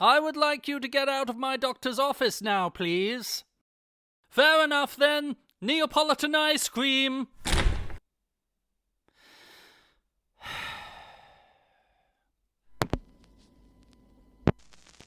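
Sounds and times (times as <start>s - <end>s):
person breathing in: 9.2s - 12.2s.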